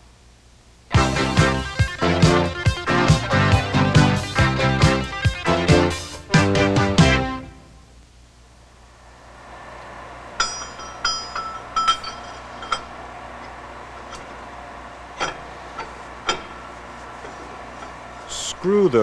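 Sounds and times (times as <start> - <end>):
metal tools clinking and knocking: 10.4 - 13.0, 15.2 - 16.6.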